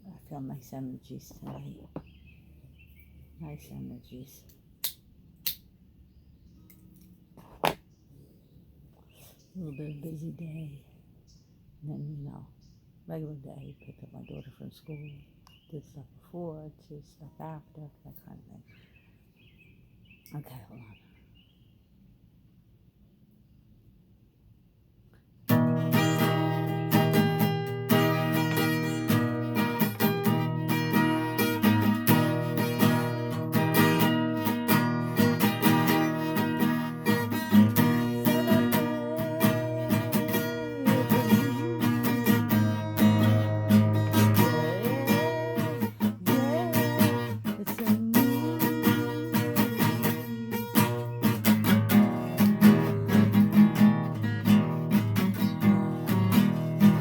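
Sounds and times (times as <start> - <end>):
acoustic guitar strumming: 25.5 - 57.0.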